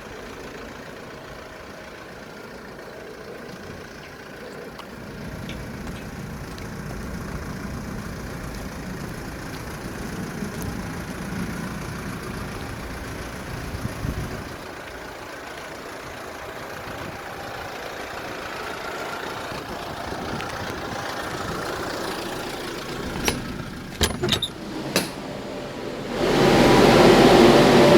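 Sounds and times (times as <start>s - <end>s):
truck engine idling: 0.0s - 27.9s.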